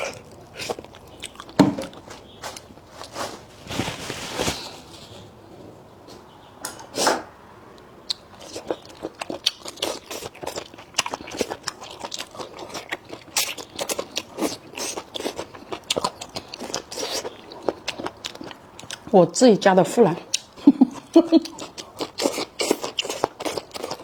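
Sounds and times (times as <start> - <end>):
person biting and chewing food: 0.0 - 2.1, 8.1 - 19.0, 21.5 - 24.0.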